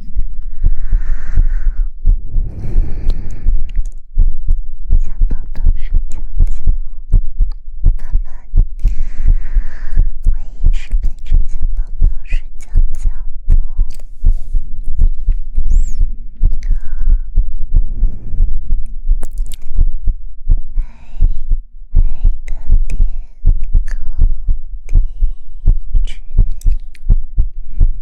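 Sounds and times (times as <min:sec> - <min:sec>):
thumping and rubbing on microphone: 0:12.8 - 0:16.6.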